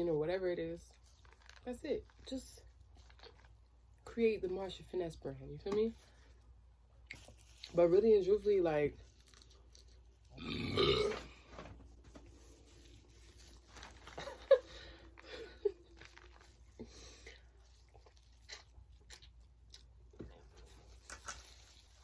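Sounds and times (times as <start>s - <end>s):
chewing: 2.8s - 3.8s, 15.8s - 22.0s.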